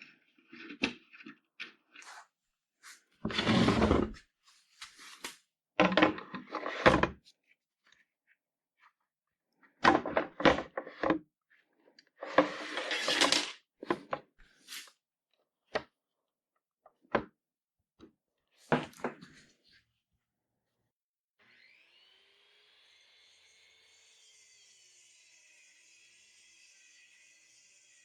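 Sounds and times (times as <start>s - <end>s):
scraping sliding noise: 2.8s - 4.2s, 12.2s - 13.6s, 14.7s - 14.9s.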